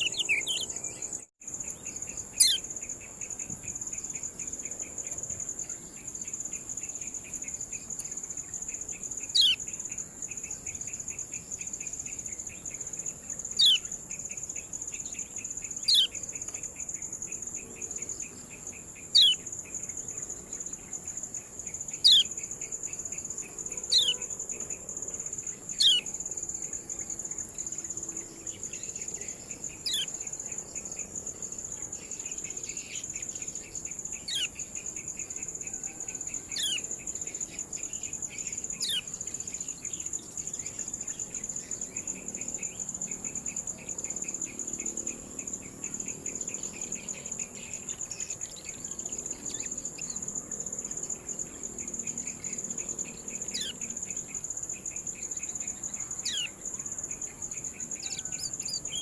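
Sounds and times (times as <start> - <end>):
bird chirps: 0.0 - 21.1, 21.7 - 24.8, 25.7 - 26.2, 27.0 - 31.0, 31.8 - 42.8, 53.3 - 56.6, 58.0 - 59.0
cricket trill: 0.0 - 59.0
pulsing insect chirr: 0.0 - 59.0.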